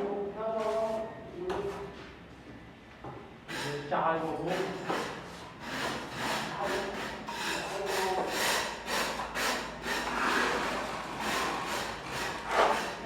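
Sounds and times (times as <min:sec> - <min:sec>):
hand tool scraping a surface: 0:00.5 - 0:01.0, 0:03.5 - 0:13.0.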